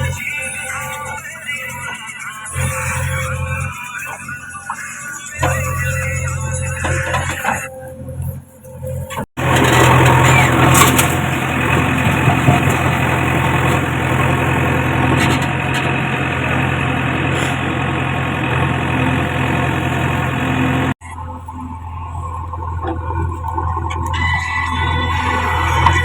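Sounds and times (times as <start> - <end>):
diesel engine running: 5.4 - 26.0.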